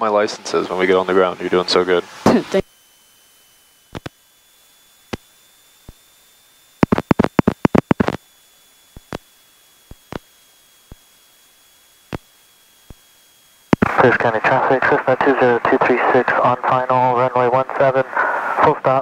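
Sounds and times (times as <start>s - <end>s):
thin high whine: 0.0s - 19.0s
sharp radio clicks: 3.9s - 4.2s, 6.8s - 8.2s, 8.9s - 9.3s, 9.9s - 10.3s, 13.7s - 15.8s.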